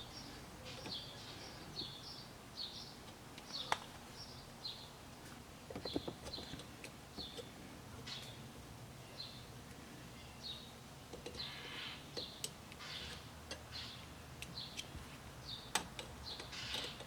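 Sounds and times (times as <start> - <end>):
small bird chirping: 10.2 - 17.0.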